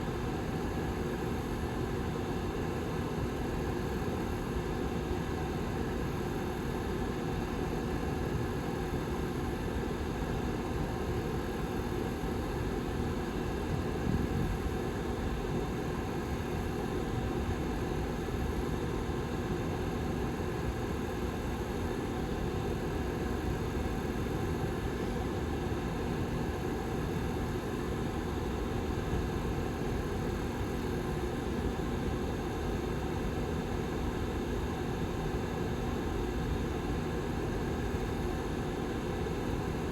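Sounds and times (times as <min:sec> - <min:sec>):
heater fan air rush: 0:00.0 - 0:39.9.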